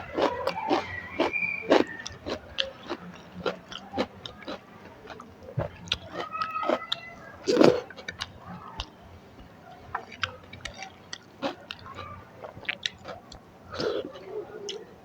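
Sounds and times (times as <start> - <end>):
chewing food: 0.0 - 15.0.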